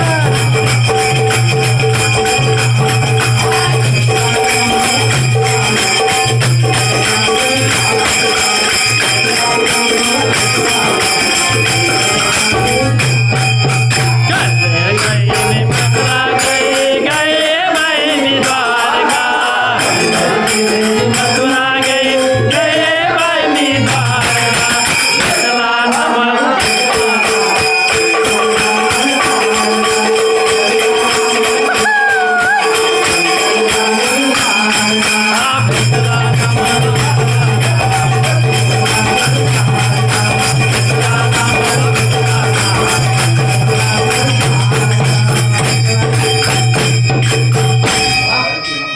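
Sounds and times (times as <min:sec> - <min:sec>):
man singing: 0:00.0 - 0:46.9
hand drum rhythm: 0:00.0 - 0:48.5
jingling hand percussion: 0:00.0 - 0:48.9.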